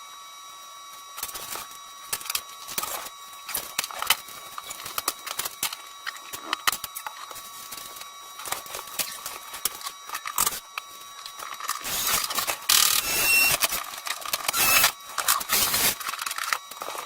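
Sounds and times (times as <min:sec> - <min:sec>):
scraping bursts: 0:11.8 - 0:13.8, 0:14.5 - 0:14.9.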